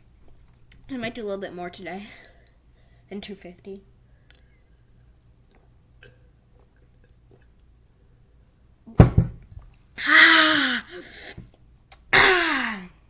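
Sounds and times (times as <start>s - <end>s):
sudden thump: 8.9s - 9.7s.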